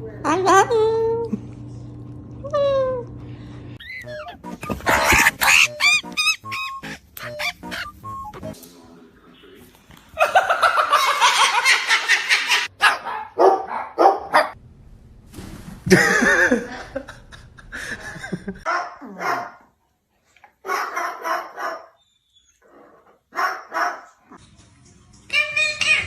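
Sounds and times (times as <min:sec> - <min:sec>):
dog barking and yipping: 0:03.8 - 0:08.0, 0:12.5 - 0:14.6, 0:18.7 - 0:19.6, 0:20.6 - 0:22.0, 0:23.3 - 0:24.2.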